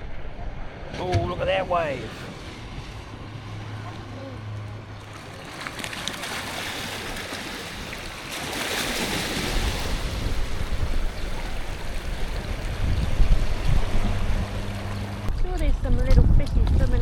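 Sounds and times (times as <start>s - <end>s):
ocean waves crashing: 0.0s - 15.9s
wind buffeting microphone: 8.9s - 17.0s.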